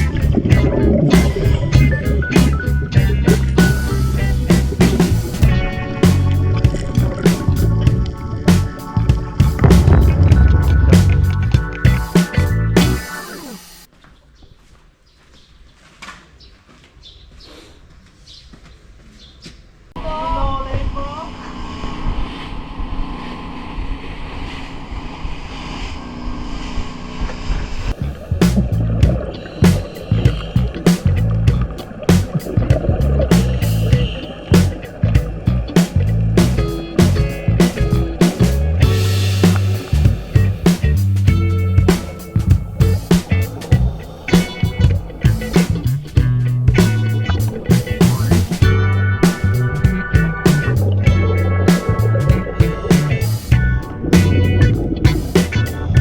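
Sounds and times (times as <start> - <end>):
boat engine droning: 0.0 - 13.2, 20.9 - 56.0
music with sharp beat: 0.0 - 13.9, 28.4 - 56.0
water noise: 0.0 - 13.9, 20.0 - 56.0
wind: 13.8 - 56.0.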